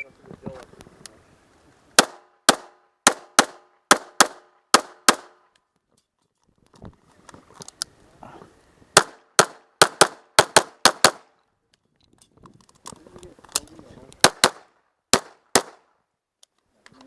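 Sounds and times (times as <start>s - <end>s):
pistol shots: 2.0s - 5.4s, 9.0s - 11.3s, 14.2s - 15.9s.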